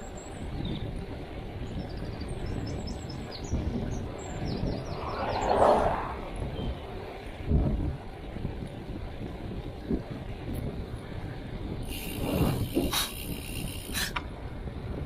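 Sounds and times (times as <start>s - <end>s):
wind rumbling on microphone: 0.0s - 15.0s
rush of noise: 4.4s - 6.8s.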